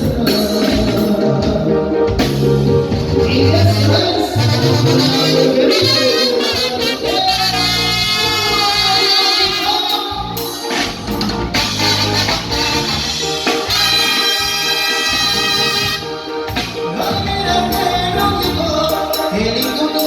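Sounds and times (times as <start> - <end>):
brass band playing: 0.0 - 20.0.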